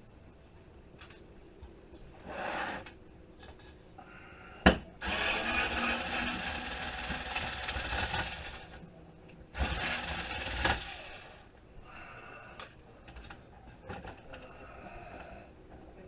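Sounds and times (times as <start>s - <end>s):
power screwdriver motor running: 5.0s - 8.6s.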